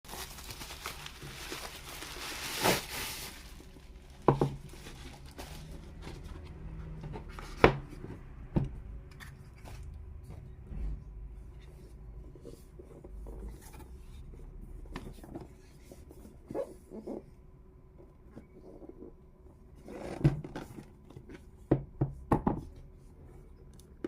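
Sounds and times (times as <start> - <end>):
packaging rustling: 0.1 - 6.6.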